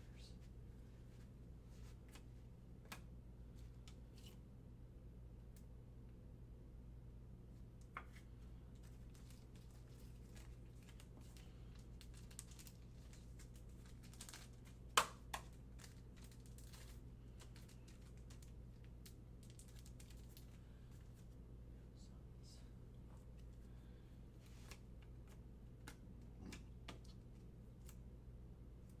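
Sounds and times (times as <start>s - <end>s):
steady low hum: 0.0s - 29.0s
cards and packaging rustling: 8.0s - 21.3s.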